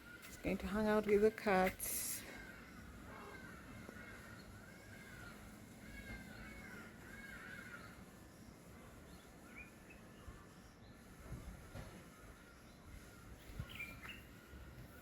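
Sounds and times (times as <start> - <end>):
faint bird calls: 1.9 - 15.0
bird chirps: 12.4 - 14.5.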